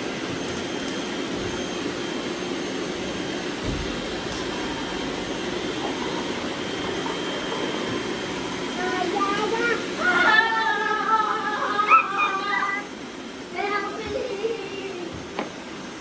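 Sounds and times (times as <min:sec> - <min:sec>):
robot vacuums whirring: 0:00.2 - 0:15.6
low thump: 0:03.6 - 0:04.2.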